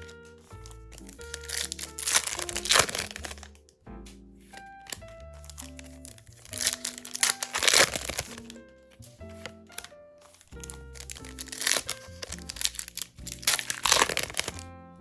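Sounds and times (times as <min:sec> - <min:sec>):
foil packs crinkling and tearing: 0:00.0 - 0:03.6, 0:04.6 - 0:14.6
background music held notes: 0:00.0 - 0:15.0.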